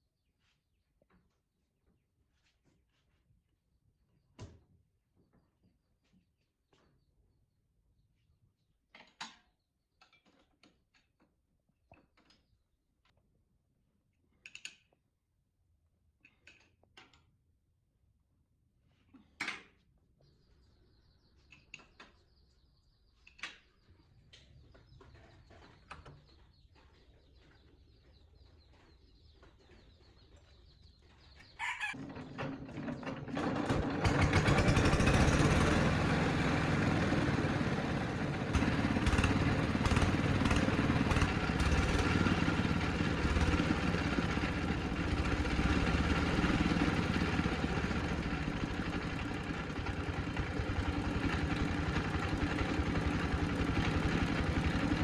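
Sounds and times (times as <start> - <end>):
air compressor running: 32.1 - 55.0.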